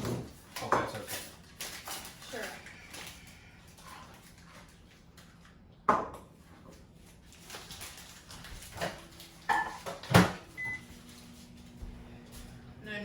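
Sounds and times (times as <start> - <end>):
dishes and utensils clattering: 7.5 - 10.4.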